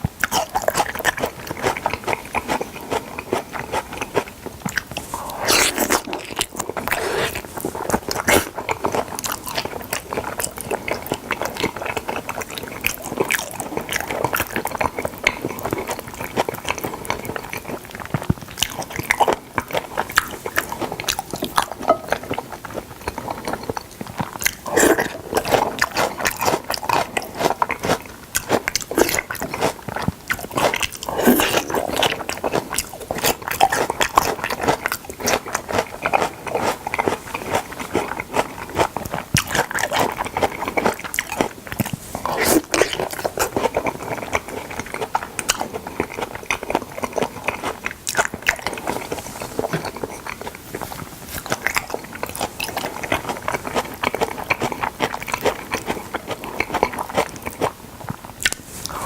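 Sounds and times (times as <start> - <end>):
close chewing and biting: 0.0 - 59.0.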